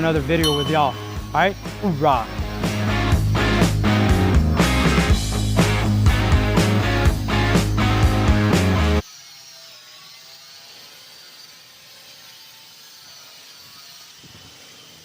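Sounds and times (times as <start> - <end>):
rock music with guitar: 0.0 - 9.0
faint wavering tones: 0.4 - 2.5.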